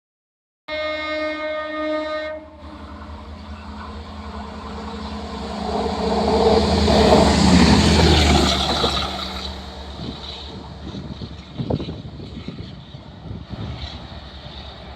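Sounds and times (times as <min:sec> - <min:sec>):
train horn blast: 0:00.7 - 0:06.3
train rushing past: 0:02.2 - 0:14.9.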